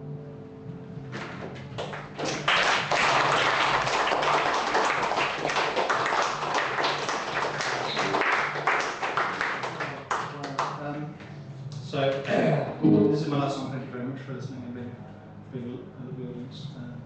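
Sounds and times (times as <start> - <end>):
audience clapping: 1.6 - 10.9
guitar chord ringing: 12.8 - 13.9.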